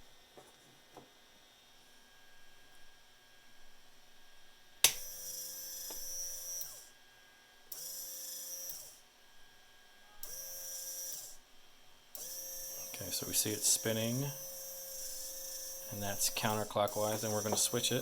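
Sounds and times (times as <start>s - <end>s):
small servo motor whirring: 5.0s - 7.0s, 7.7s - 9.0s, 10.2s - 11.4s, 12.1s - 18.0s.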